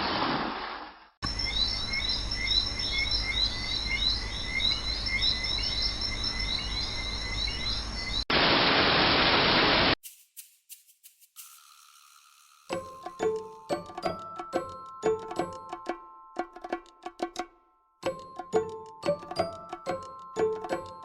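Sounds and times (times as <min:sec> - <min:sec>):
frogs chirping: 0:01.2 - 0:08.2.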